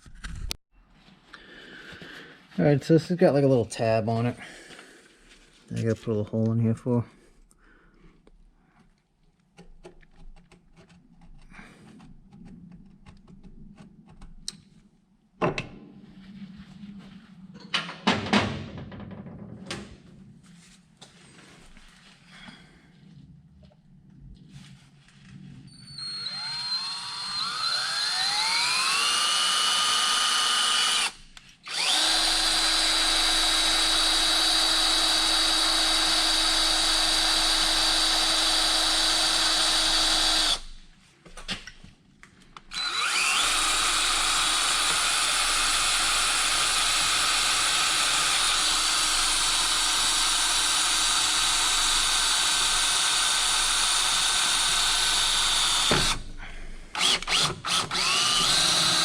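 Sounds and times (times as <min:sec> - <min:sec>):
power drill whining: 0:25.7 - 0:40.8, 0:42.6 - 0:59.0.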